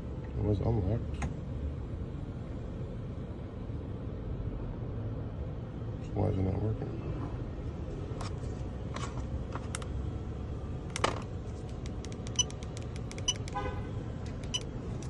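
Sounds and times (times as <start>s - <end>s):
key fob button clicks: 11.7s - 13.6s, 14.3s - 14.7s
vehicle lock chirp beep: 12.2s - 13.6s, 14.4s - 14.7s.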